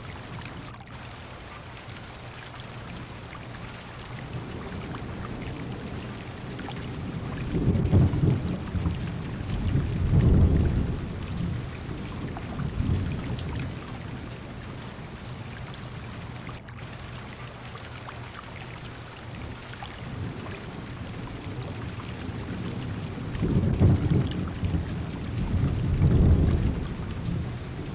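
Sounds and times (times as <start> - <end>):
heavy rain on car roof: 0.0 - 27.9
thunder rolling: 4.3 - 13.8, 21.3 - 27.9.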